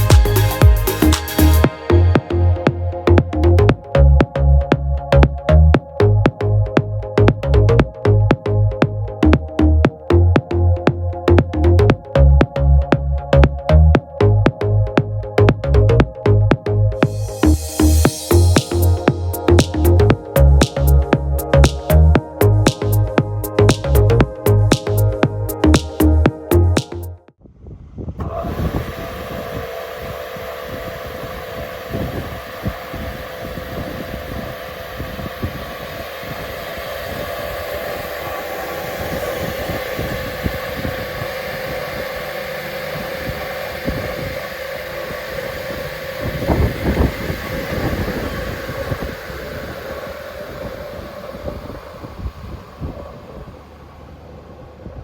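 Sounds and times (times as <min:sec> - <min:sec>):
saw motor whining: 0:17.0 - 0:22.1, 0:28.2 - 0:54.2.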